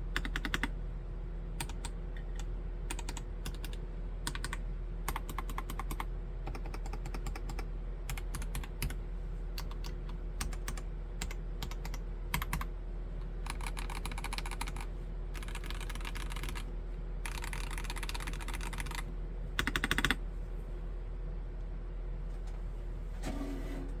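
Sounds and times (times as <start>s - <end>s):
mechanical keyboard typing: 0.2s - 0.7s, 1.6s - 9.0s, 9.6s - 12.7s, 13.4s - 20.2s.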